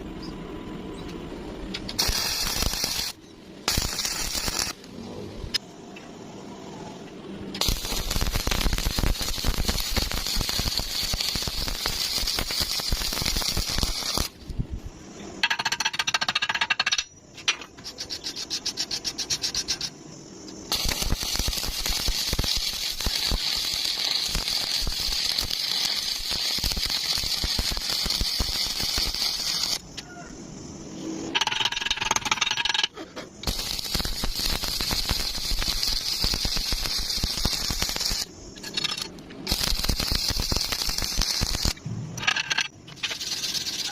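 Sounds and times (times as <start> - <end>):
high-pitched whine: 0.0 - 15.8
welding arc crackling: 1.7 - 5.6, 7.5 - 14.4, 20.6 - 29.9, 31.3 - 41.8, 42.6 - 43.9.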